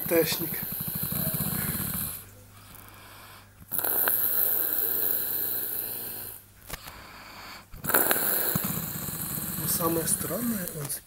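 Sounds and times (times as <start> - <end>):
man snoring: 0.0 - 2.2, 3.7 - 6.4, 7.8 - 10.9.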